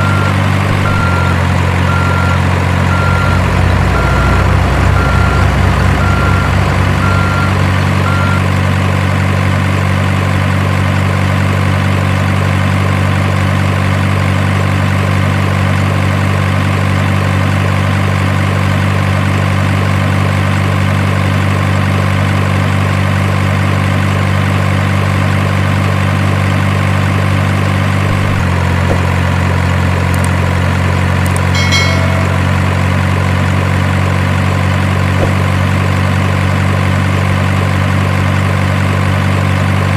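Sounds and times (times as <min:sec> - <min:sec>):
reversing beeps: 0:00.0 - 0:04.4, 0:05.0 - 0:08.5
truck engine idling: 0:00.0 - 0:39.9.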